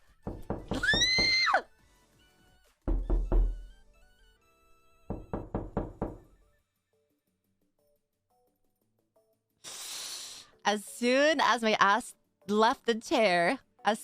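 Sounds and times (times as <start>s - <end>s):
faint background music: 0.0s - 14.0s
knocking on door: 0.2s - 1.4s, 2.9s - 3.8s, 5.1s - 6.3s.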